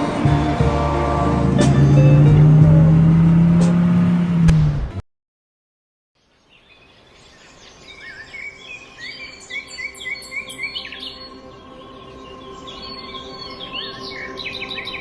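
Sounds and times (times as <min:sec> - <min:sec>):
birds singing and chirping: 0:06.4 - 0:15.0.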